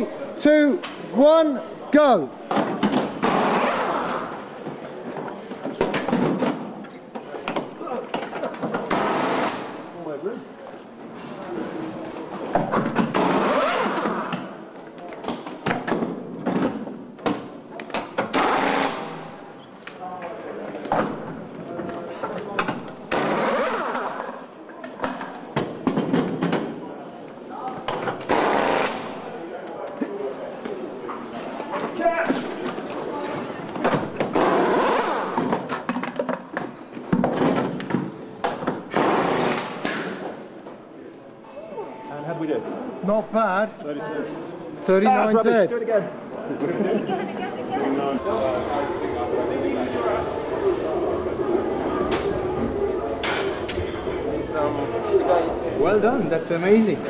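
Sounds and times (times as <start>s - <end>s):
thuds of wheels and tools: 25.0s - 26.7s.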